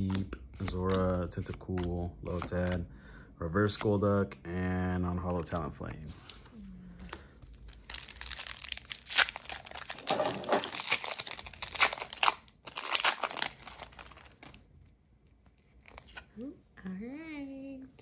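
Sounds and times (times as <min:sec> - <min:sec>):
foil wrapper crinkling: 0:07.5 - 0:14.6.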